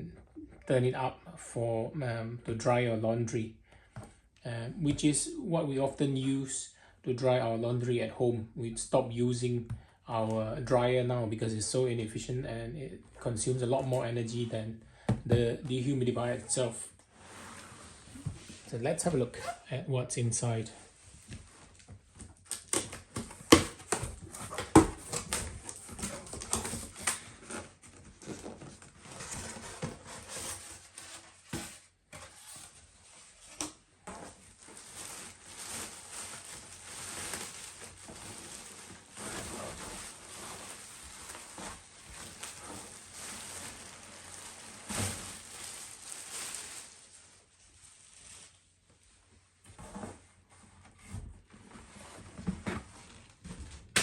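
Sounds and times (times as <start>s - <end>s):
packaging rustling and scraping: 20.9s - 48.8s.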